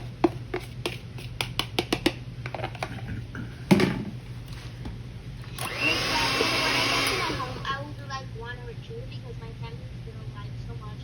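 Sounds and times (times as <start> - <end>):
knock on mixing bowl: 3.7 - 4.2
electric hand mixer running: 5.5 - 7.8.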